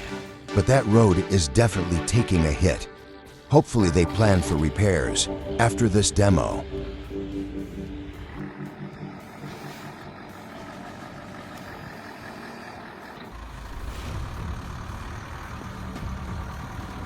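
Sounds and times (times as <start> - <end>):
heavy machinery engine rumbling: 3.8 - 17.0.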